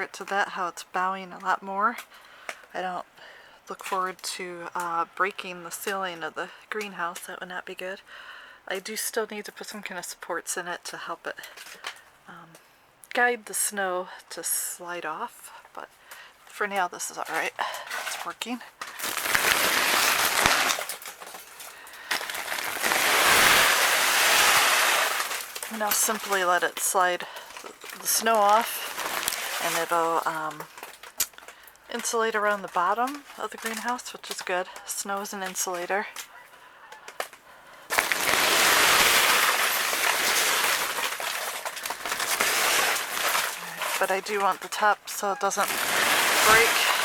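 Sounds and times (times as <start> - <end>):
snow sliding off a roof: 17.1 - 31.2, 37.9 - 47.0.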